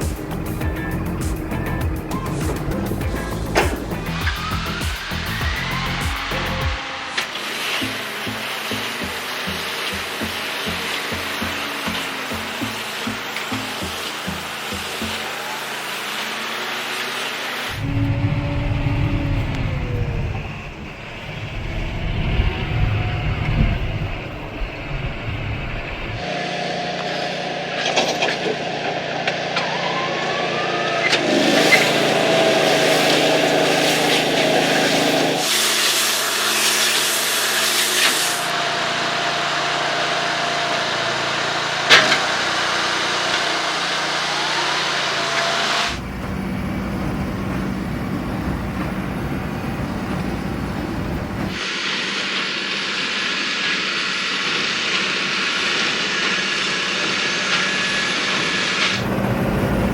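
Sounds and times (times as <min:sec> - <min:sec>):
tractor engine running: 0:00.0 - 0:15.7, 0:17.6 - 0:30.2, 0:31.1 - 0:35.5, 0:38.4 - 0:51.7, 0:55.8 - 0:59.9
baling machinery working: 0:00.0 - 0:59.9.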